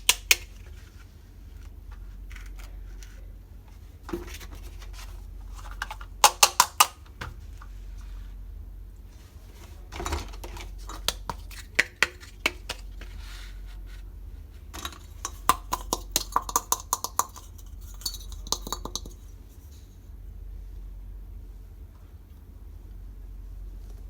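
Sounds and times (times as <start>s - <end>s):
steady low hum: 0.0s - 24.0s
toy pots and plates clinking: 10.8s - 12.9s, 14.8s - 19.3s.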